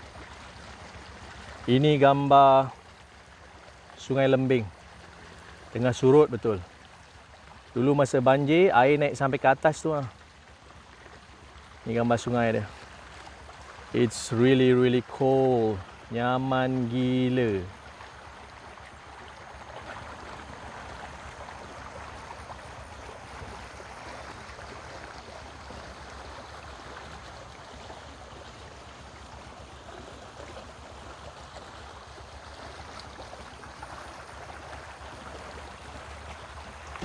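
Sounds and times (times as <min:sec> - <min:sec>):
shallow river water flowing: 0:00.0 - 0:37.0.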